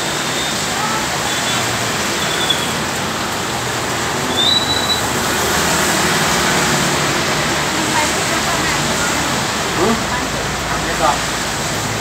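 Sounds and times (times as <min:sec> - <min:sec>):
heavy rain: 0:00.0 - 0:12.0
brief high squeaks: 0:04.4 - 0:05.1.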